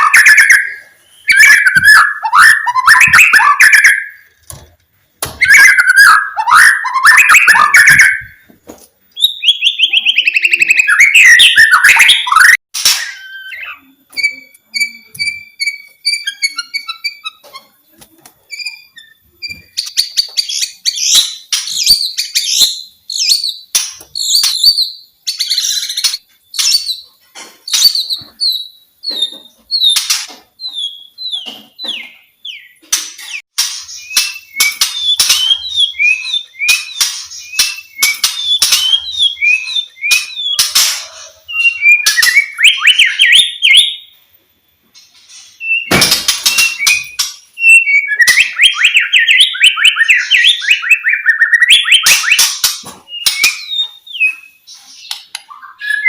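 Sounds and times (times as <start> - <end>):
songbird whistling and warbling: 0.0 - 4.3, 5.4 - 8.4, 9.1 - 17.8, 27.7 - 44.1, 45.0 - 56.0.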